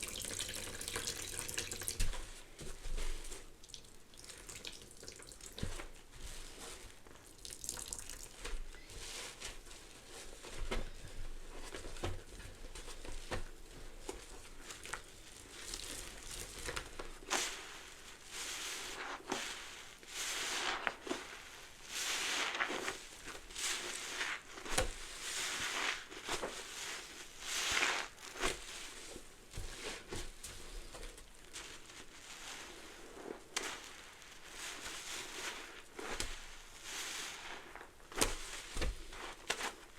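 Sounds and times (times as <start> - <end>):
wet sponge squelching: 14.6 - 39.9.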